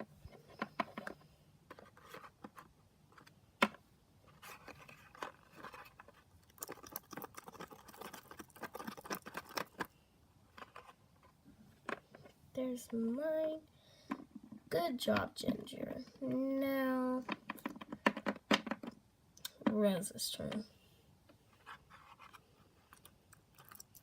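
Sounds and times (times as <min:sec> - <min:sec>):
stick stirring slime in bowl: 0:06.4 - 0:09.8.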